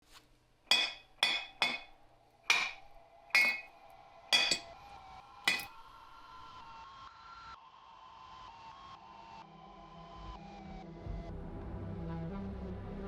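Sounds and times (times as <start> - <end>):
metal struck and ringing: 0.7 - 3.8, 4.4 - 4.8, 5.5 - 6.6.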